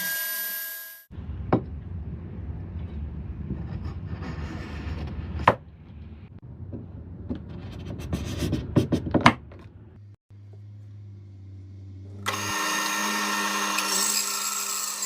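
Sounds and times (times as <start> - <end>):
low rumble: 1.1 - 4.3.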